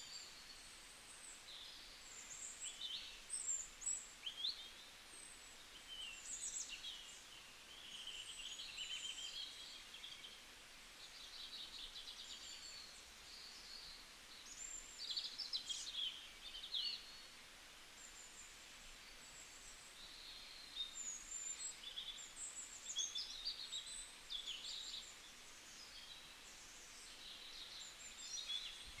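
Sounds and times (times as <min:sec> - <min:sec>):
faint steady hiss: 0:00.0 - 0:29.0
birds singing and calling: 0:19.4 - 0:29.0.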